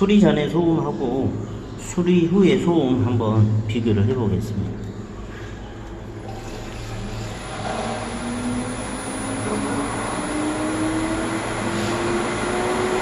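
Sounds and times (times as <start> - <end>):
faint high whine: 6.0 - 13.0
pump motor hum rising: 6.2 - 13.0.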